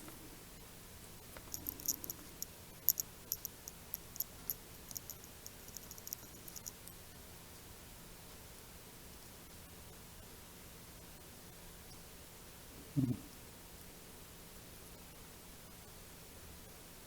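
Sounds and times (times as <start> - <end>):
solder flux crackling: 1.2 - 7.0.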